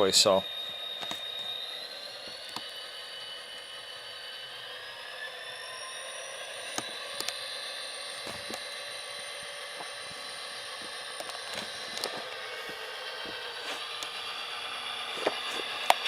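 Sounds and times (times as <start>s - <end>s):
model locomotive diesel engine drone: 0.0s - 16.0s
sharp clicks: 2.2s - 3.7s, 6.7s - 7.5s, 10.8s - 14.2s.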